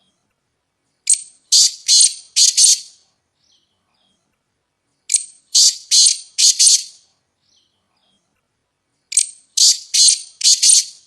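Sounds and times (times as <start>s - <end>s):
partridge raspy calls: 1.1s - 3.0s, 5.1s - 7.0s, 9.1s - 11.0s.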